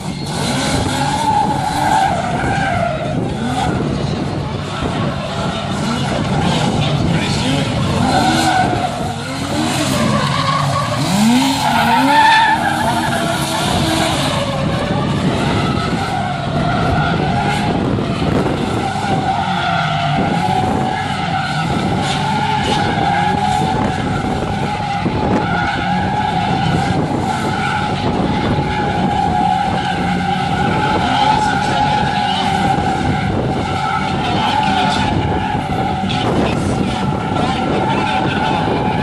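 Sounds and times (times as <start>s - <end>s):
car engine revving: 0.0s - 39.0s
tyres screeching: 7.3s - 14.7s.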